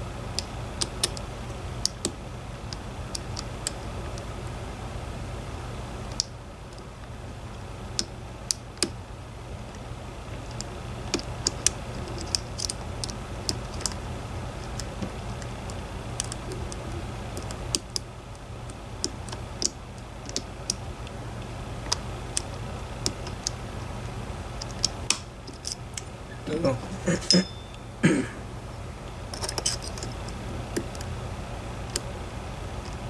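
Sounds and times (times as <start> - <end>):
steady low hum: 20.1 - 33.0.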